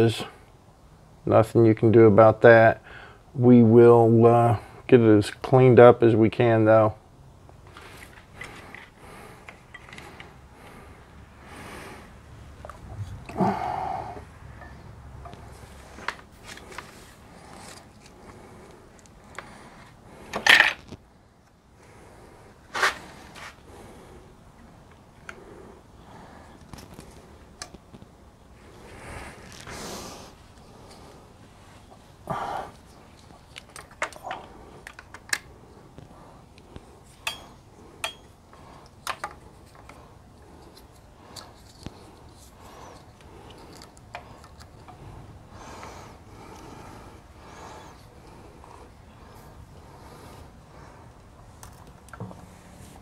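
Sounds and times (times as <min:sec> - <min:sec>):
metal objects clicking and scraping: 0:08.0 - 0:10.3, 0:20.2 - 0:21.0
metal parts clinking: 0:20.4 - 0:20.9.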